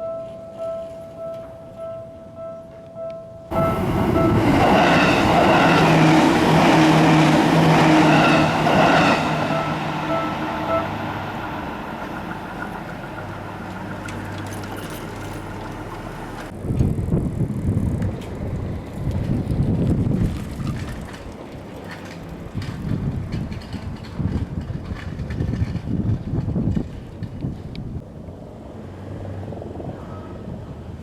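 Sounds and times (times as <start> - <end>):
level crossing bell ringing: 0.0 - 6.0, 7.8 - 12.3
train passing over crossing: 0.0 - 20.0
wind gusts on microphone: 3.5 - 14.0, 16.4 - 31.0.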